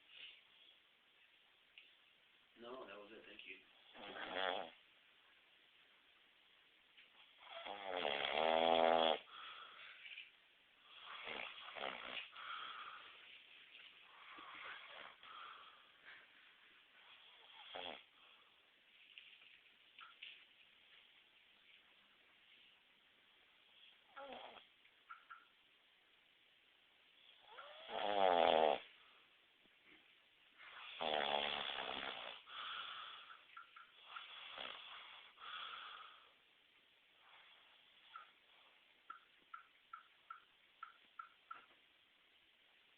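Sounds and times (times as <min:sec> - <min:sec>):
man snoring: 0:03.8 - 0:04.8, 0:07.4 - 0:09.3, 0:11.0 - 0:12.3, 0:17.4 - 0:18.1, 0:27.4 - 0:28.9, 0:30.9 - 0:33.0, 0:34.4 - 0:35.0
wheezy breaths: 0:09.2 - 0:10.3, 0:10.9 - 0:13.4, 0:14.0 - 0:18.6, 0:30.6 - 0:36.4.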